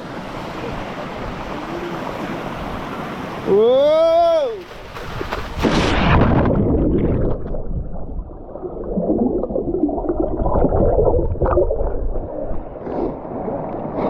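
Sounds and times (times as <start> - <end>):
muffled underwater gurgling: 6.4 - 13.2.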